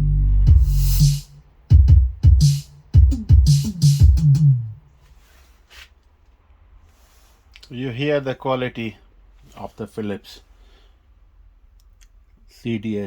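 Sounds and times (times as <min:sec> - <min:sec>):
electronic music with drum beat: 0:00.0 - 0:04.7.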